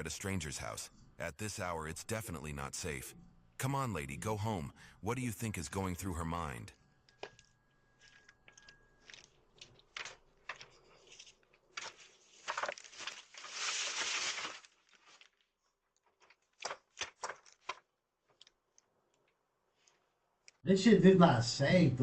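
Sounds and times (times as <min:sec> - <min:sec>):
faint rustling and crinkling: 0:07.1 - 0:20.6.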